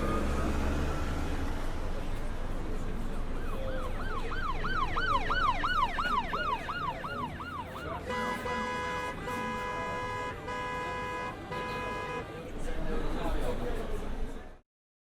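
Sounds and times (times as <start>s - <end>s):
siren wailing: 3.3s - 8.1s.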